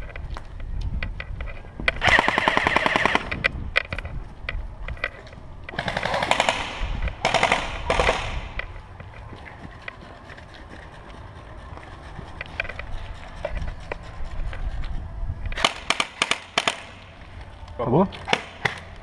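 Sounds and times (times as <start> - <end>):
airsoft gun bursts: 2.0 - 3.3.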